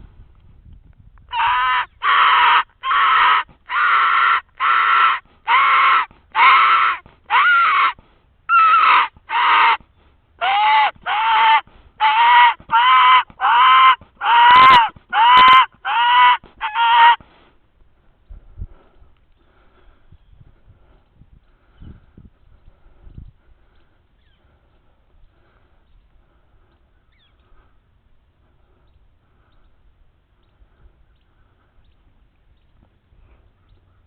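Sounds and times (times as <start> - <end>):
drawn-out squeals from game call: 1.4 - 9.8, 10.4 - 17.2.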